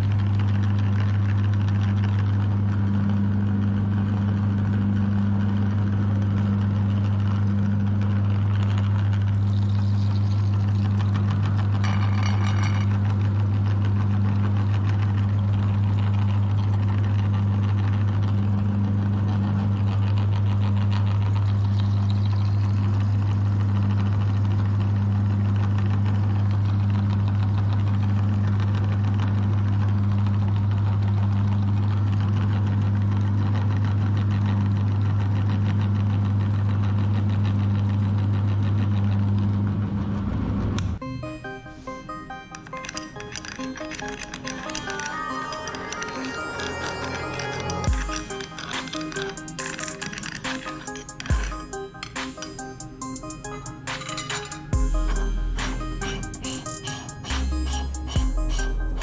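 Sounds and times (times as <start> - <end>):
meat grinder motor hum: 0.0 - 40.4, 42.6 - 59.0
high-pitched squeal: 41.0 - 59.0.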